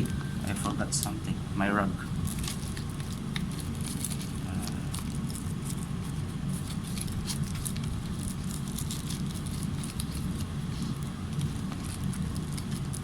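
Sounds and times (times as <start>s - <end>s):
low background rumble: 0.0s - 13.0s.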